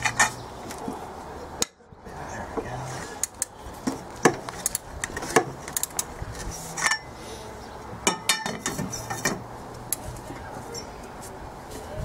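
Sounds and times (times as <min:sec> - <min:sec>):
metal tools clinking on bolts: 0:06.7 - 0:07.2, 0:08.0 - 0:09.4.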